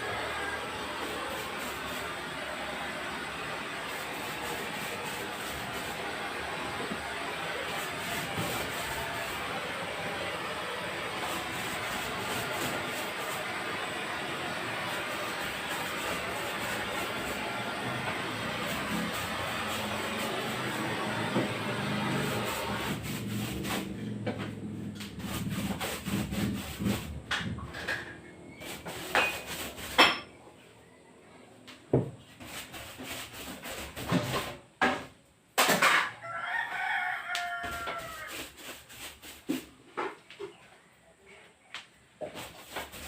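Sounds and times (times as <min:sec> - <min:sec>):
rooster crowing: 0:36.0 - 0:38.5.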